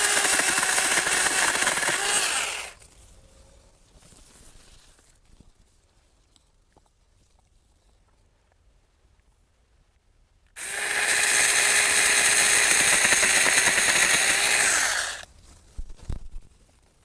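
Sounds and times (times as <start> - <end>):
electric chainsaw whining: 0.0 - 2.8, 10.6 - 15.3.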